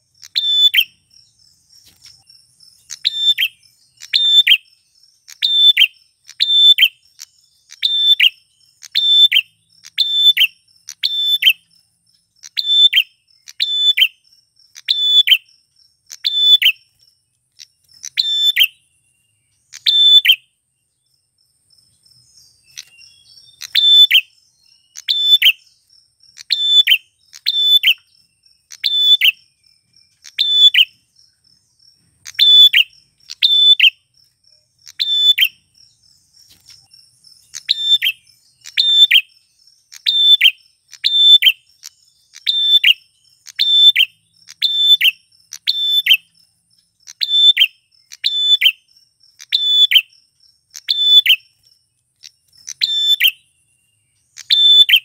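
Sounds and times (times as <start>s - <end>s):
bird calling in sharp notes: 0.0s - 1.0s, 2.9s - 11.7s, 12.4s - 15.5s, 17.6s - 18.8s, 19.6s - 20.5s, 22.7s - 29.5s, 30.2s - 31.0s, 32.2s - 34.1s, 34.8s - 35.7s, 37.5s - 46.3s, 47.0s - 50.1s
high insect trill: 0.0s - 55.0s.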